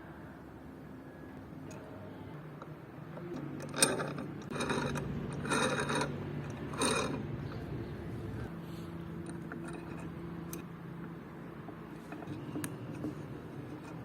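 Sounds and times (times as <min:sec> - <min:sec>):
hand-cranked grinder whirring: 0:03.2 - 0:08.5, 0:09.3 - 0:10.6.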